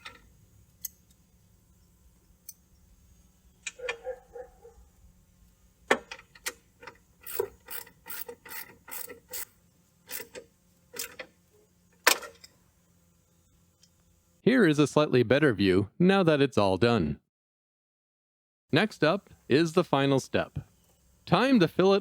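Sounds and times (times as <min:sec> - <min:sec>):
socket ratchet clicking: 0:05.9 - 0:11.4.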